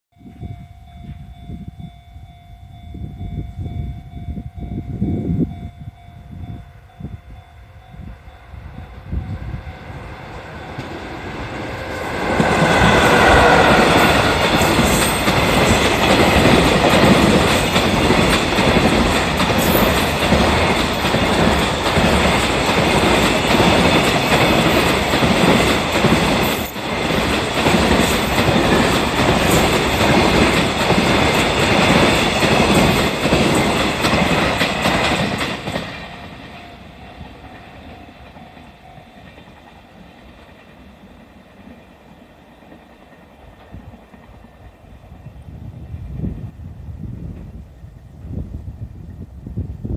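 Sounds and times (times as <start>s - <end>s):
level crossing warning bell: 0.1s - 40.0s
electric locomotive passing: 0.2s - 49.9s
freight wagons clattering over rails: 11.9s - 36.6s.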